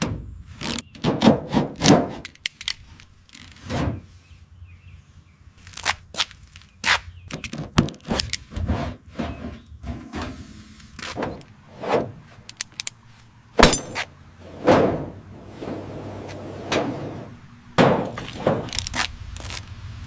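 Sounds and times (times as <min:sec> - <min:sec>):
knocks and clanks: 0:00.8 - 0:02.4, 0:11.0 - 0:12.9, 0:13.6 - 0:19.1
short scrapes: 0:08.6 - 0:12.5, 0:13.6 - 0:19.1
heavy thud: 0:13.6 - 0:18.8.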